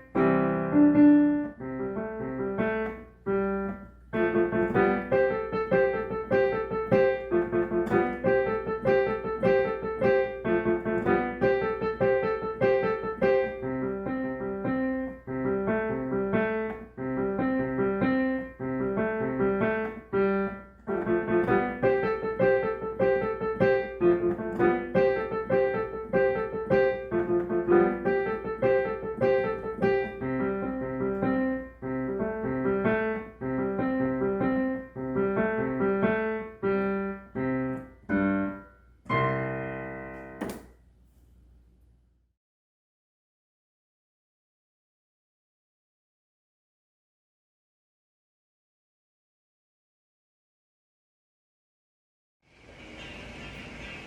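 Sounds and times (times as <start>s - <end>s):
lively solo piano piece: 0.0s - 40.7s.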